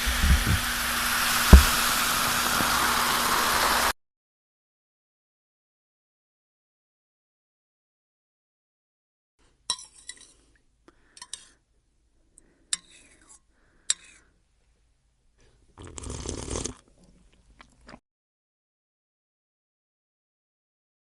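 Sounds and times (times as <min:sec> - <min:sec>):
crunchy food being chewed: 0:15.8 - 0:18.0.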